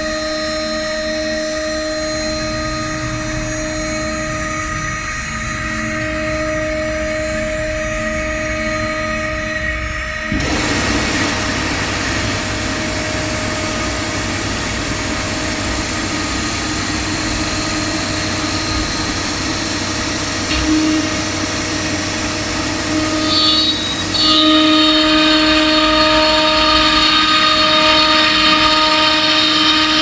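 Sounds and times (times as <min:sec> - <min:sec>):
router spindle whine: 0:00.0 - 0:30.0
rushing noise: 0:20.7 - 0:30.0.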